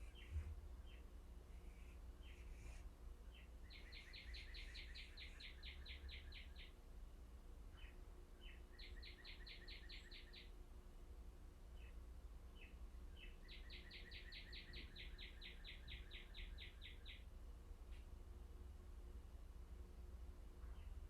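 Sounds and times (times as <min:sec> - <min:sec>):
low steady hum: 0:00.0 - 0:21.0
songbird trilling: 0:03.3 - 0:06.7, 0:07.8 - 0:10.5, 0:12.6 - 0:17.2.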